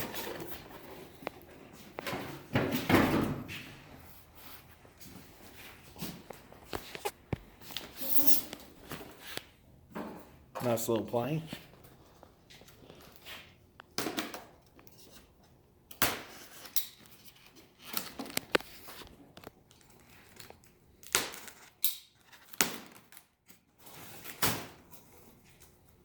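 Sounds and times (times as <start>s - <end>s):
cardboard rustling and scraping: 0.0s - 2.8s.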